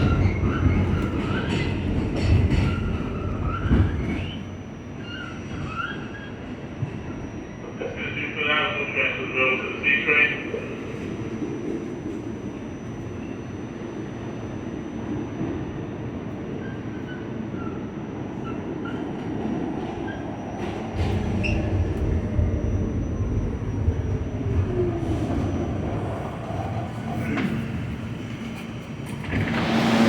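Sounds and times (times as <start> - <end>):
subway car rail rumble: 0.0 - 30.0
high-pitched rail squeals: 2.5 - 7.6, 16.5 - 19.1, 19.9 - 26.3.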